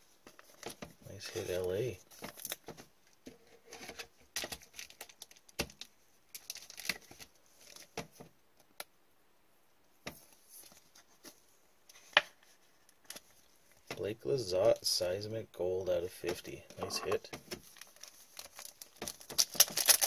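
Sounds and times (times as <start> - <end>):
cards and wrappers rustling: 0.2 - 8.3, 10.2 - 14.0, 16.2 - 20.0.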